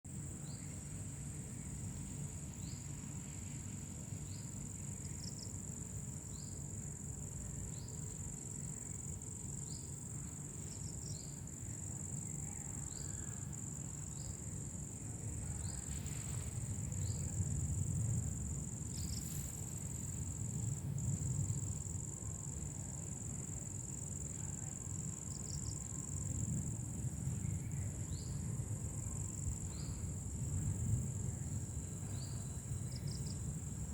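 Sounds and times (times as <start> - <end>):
high-pitched insect trill: 0.2 - 33.9
steady low rumble: 14.9 - 22.6.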